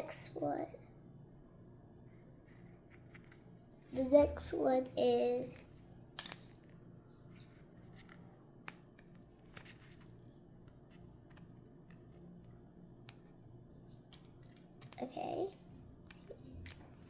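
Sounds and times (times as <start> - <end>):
faint low hum: 0.0 - 17.0
clicks of objects being handled: 6.2 - 6.8.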